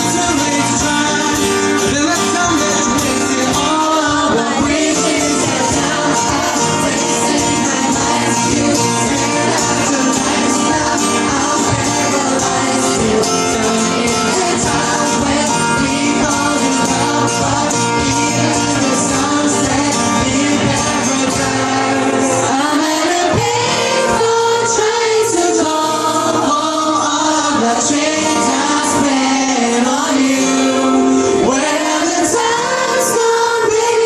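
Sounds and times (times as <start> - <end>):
live pop band playing: 0.0 - 34.0
person singing: 0.0 - 34.0.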